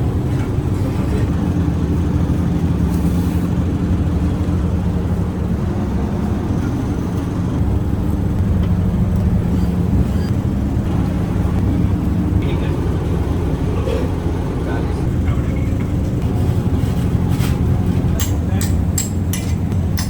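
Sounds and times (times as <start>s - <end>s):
low motor drone: 0.0s - 20.0s.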